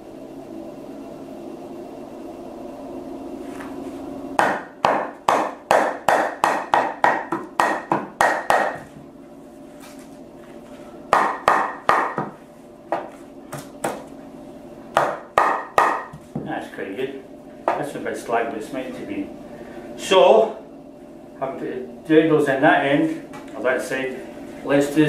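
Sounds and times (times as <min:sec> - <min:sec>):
hammer tapping wooden dowels: 0:04.4 - 0:08.9, 0:11.1 - 0:14.0, 0:15.0 - 0:16.5.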